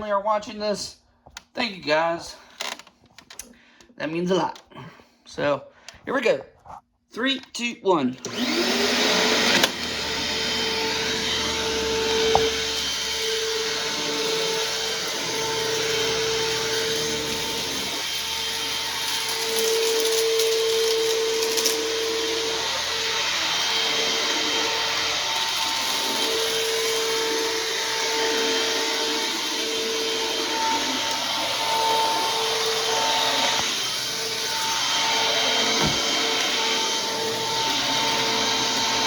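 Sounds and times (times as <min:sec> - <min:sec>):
vacuum cleaner running: 0:08.2 - 0:39.0.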